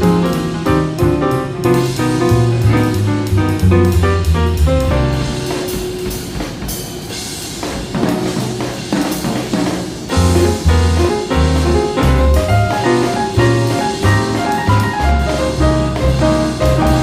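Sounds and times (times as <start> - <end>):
deep bass line: 0.0 - 5.7, 10.1 - 17.0
jazz drum kit: 0.0 - 17.0
jazz piano: 0.0 - 17.0.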